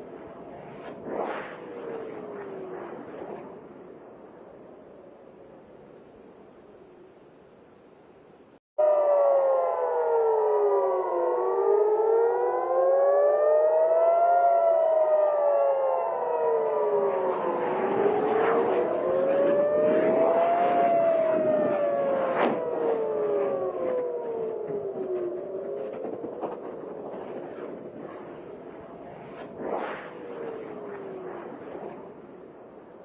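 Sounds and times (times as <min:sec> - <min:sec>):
noise: 0:00.0 - 0:33.0
falling tone: 0:08.8 - 0:27.0
air-raid sirens wailing: 0:08.8 - 0:27.3.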